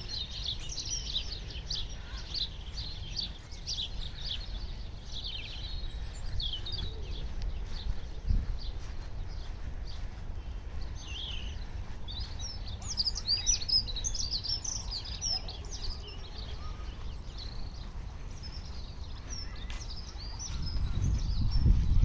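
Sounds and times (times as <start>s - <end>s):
small birds chirping: 0.0s - 22.0s.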